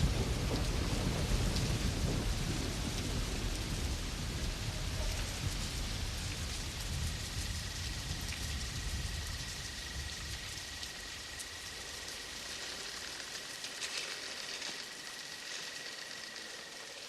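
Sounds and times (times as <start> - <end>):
low thunder rumble: 0.0 - 11.7
steady rain falling: 0.0 - 17.0.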